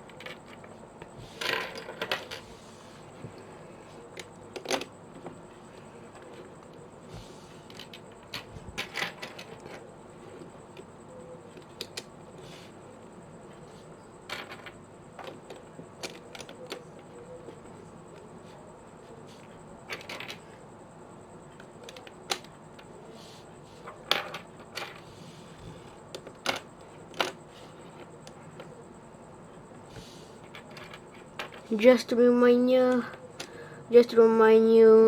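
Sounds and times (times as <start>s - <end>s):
plastic puzzle pieces clicking: 14.3s - 17.0s.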